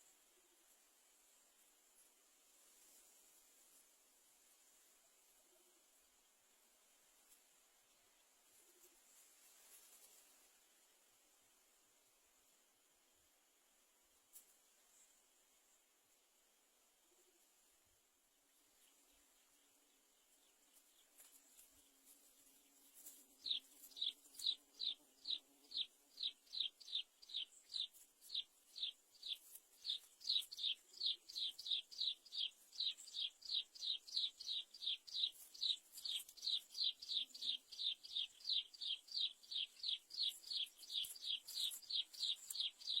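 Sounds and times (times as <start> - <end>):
bird chirping: 18.6 - 43.0.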